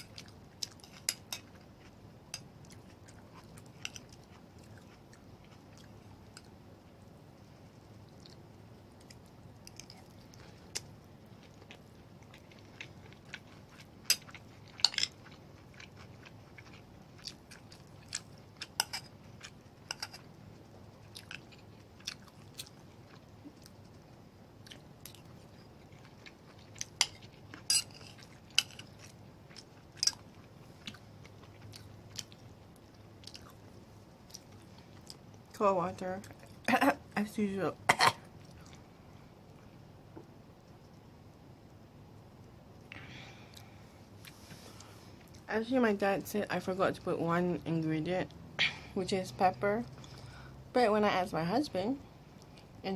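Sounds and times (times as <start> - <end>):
close chewing: 2.6 - 6.6, 9.0 - 20.2, 21.0 - 24.0, 24.6 - 35.3.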